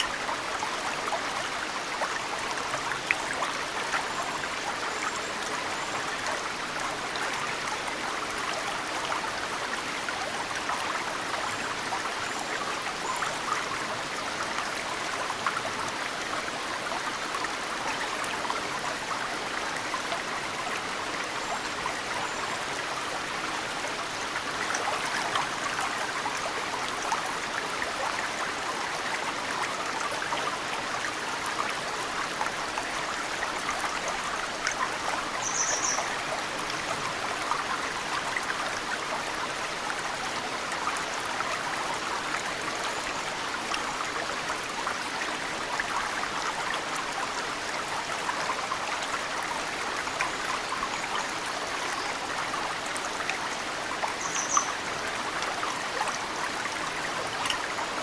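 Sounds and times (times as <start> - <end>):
stream flowing: 0.0 - 58.0.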